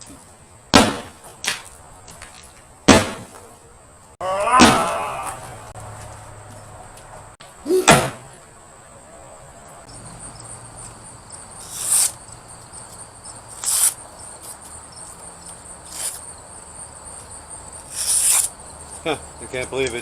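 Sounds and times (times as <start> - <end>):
crickets chirping: 0.0 - 20.0
blade chopping into rope: 0.7 - 1.7, 2.9 - 3.5, 4.4 - 5.5, 7.7 - 8.3.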